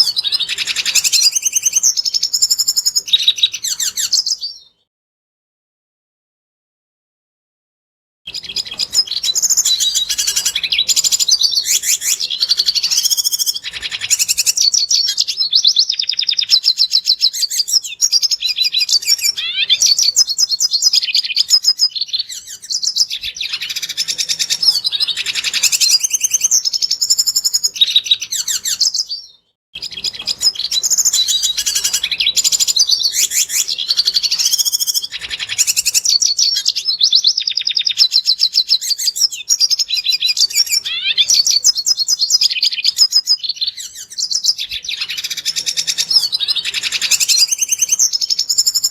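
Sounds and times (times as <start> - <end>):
bird twittering song: 0.0 - 4.9, 8.3 - 48.9.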